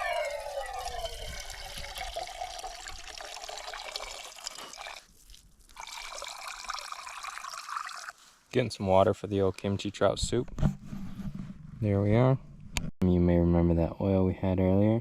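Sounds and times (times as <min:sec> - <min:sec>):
water being poured: 0:00.0 - 0:08.2.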